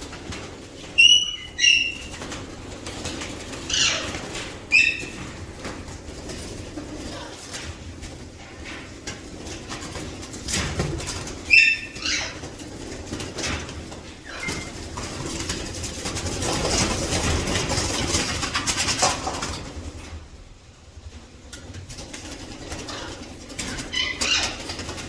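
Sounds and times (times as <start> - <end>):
parrot squawk: 1.0 - 2.1, 3.7 - 5.1
parrots calling: 1.0 - 2.2, 3.7 - 5.2, 11.4 - 12.4, 22.9 - 24.8.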